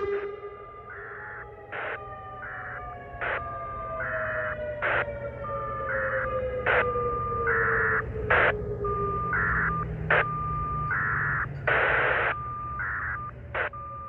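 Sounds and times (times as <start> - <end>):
steady high tone: 0.0 - 3.4
tornado siren winding down: 0.0 - 14.0.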